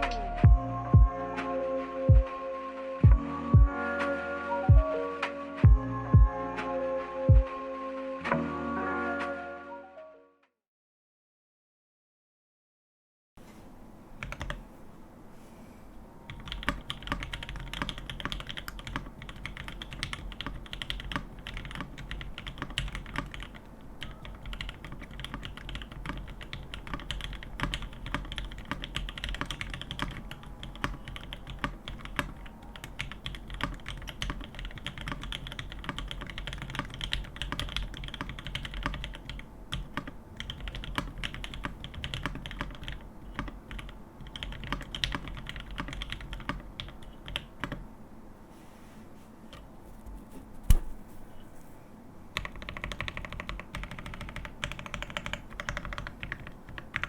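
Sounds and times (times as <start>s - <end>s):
fast typing on mechanical keyboard: 14.2s - 14.6s, 16.3s - 47.8s, 52.4s - 57.0s.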